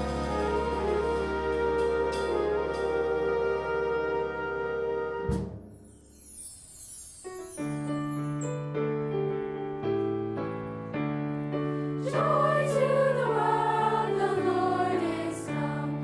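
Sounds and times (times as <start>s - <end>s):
brass section chord: 0.0s - 5.5s
piano chords: 0.0s - 16.0s.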